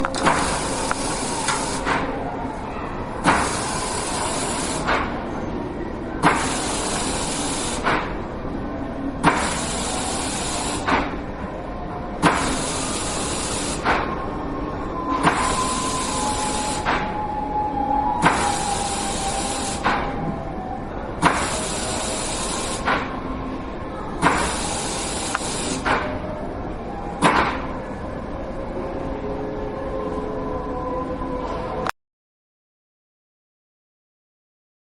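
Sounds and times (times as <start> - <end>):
low hum of hall: 0.0 - 31.9
mechanism hissing in bursts: 0.2 - 2.0, 3.2 - 5.0, 6.2 - 8.0, 9.2 - 11.0, 12.2 - 14.0, 18.2 - 19.9, 21.2 - 22.9, 24.2 - 25.9.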